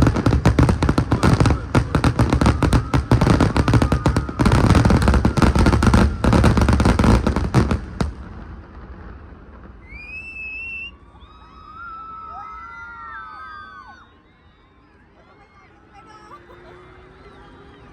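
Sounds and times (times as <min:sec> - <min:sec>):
fireworks bangs and crackling: 0:00.0 - 0:11.4
crowd hum: 0:00.0 - 0:17.9
rising whistle: 0:00.9 - 0:07.0, 0:09.8 - 0:15.5, 0:16.6 - 0:17.9.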